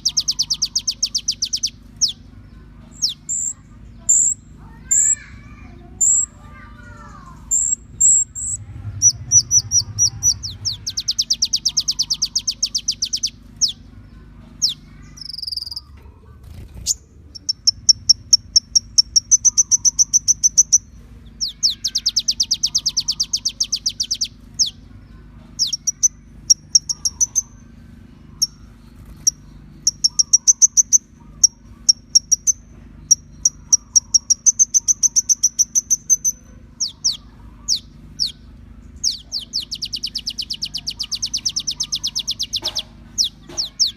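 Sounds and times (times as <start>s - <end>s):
bird trilling and chirping: 0.0s - 43.9s
steady low hum: 0.0s - 43.9s.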